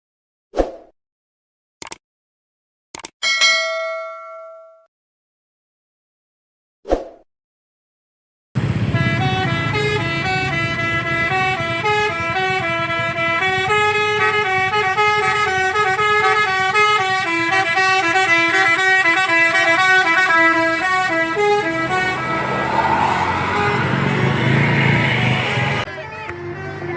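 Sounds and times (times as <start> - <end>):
bus engine running: 8.6 - 26.9
musical bus horn tune: 8.6 - 26.9.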